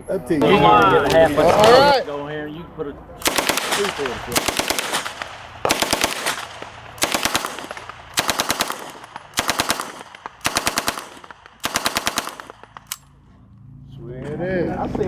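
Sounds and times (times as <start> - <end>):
machine gun bursts: 3.2 - 12.9
gunfire echo: 3.2 - 13.1.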